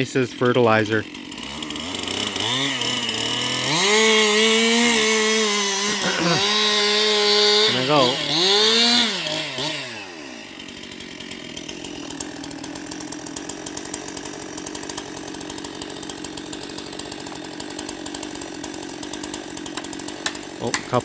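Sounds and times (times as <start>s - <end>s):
chainsaw running: 0.0s - 21.0s.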